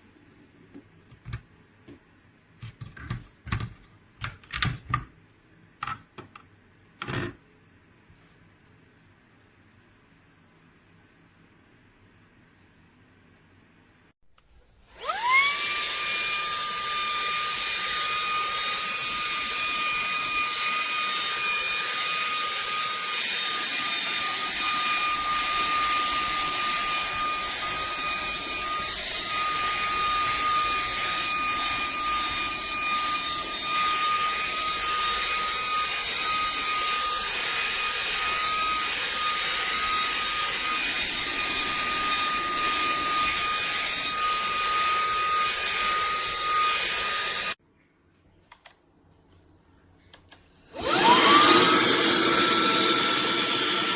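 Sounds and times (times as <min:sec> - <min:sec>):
handheld vacuum motor whining: 0:14.9 - 0:47.6, 0:50.7 - 0:53.9.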